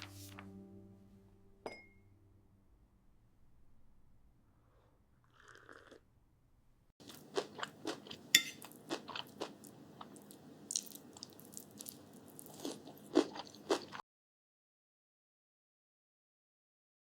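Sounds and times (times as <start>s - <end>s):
person chewing crunchy food: 7.0s - 14.0s.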